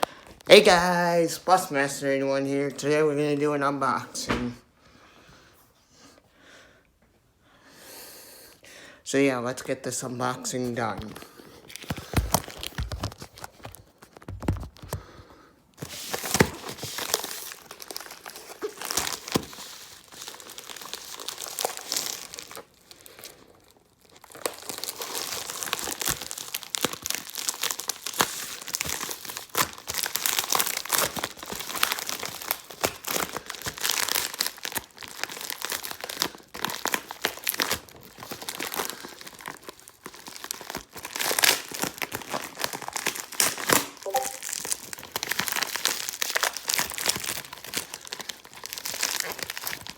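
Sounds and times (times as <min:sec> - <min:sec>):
packaging crinkling and tearing: 0:10.7 - 0:15.2, 0:15.8 - 0:49.9.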